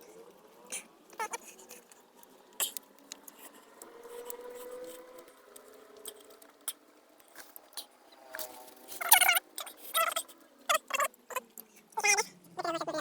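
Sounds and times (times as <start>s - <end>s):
eating clicks and smacks: 0.7s - 3.5s, 5.2s - 11.9s.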